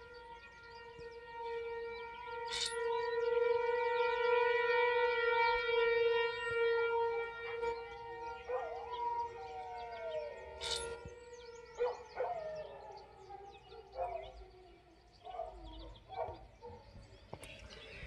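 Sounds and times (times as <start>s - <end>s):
tornado siren winding down: 0.0s - 15.1s
dog howling and yelping: 11.8s - 16.3s.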